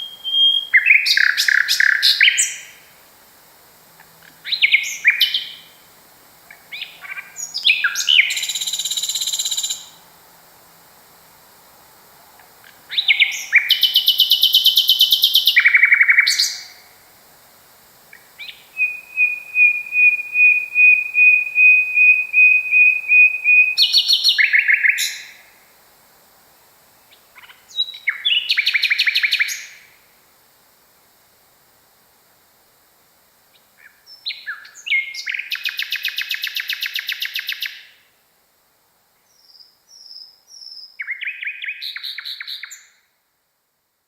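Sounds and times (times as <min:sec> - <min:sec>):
nightingale singing trills: 0:00.0 - 0:02.9, 0:04.2 - 0:05.8, 0:06.5 - 0:10.0, 0:12.7 - 0:16.8, 0:18.1 - 0:25.6, 0:27.0 - 0:29.9, 0:33.5 - 0:38.0, 0:39.2 - 0:43.1.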